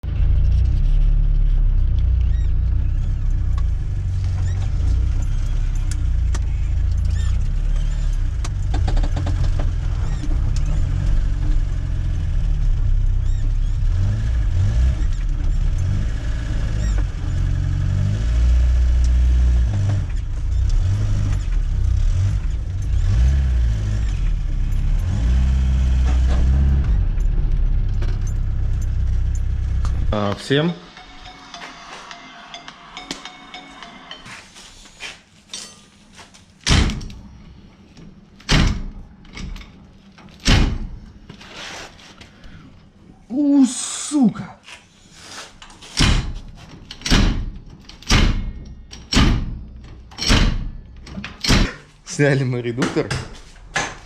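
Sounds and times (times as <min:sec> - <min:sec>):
car engine droning: 0:00.0 - 0:31.8.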